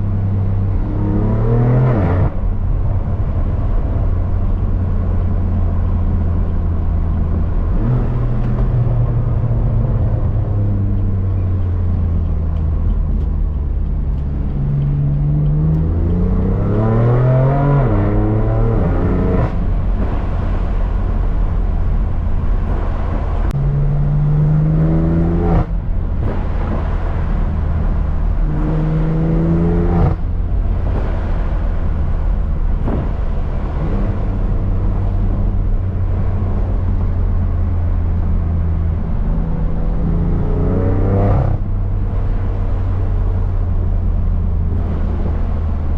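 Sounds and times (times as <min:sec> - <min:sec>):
car engine droning: 0:00.0 - 0:45.9
engine revving hard: 0:00.8 - 0:02.4, 0:15.4 - 0:21.6, 0:22.5 - 0:35.4, 0:39.6 - 0:41.6, 0:44.7 - 0:45.9
exhaust crack at gear change: 0:02.2 - 0:45.9.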